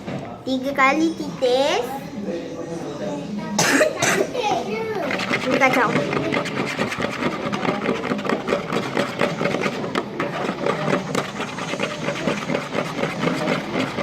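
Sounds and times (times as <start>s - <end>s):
stirrer scraping a container: 5.0s - 14.0s.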